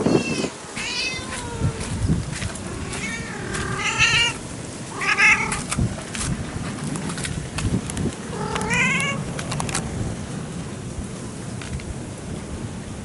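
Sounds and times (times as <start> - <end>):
cat meowing: 0.0 - 2.0, 2.7 - 5.7, 8.3 - 9.3
low wind rumble: 0.0 - 13.0.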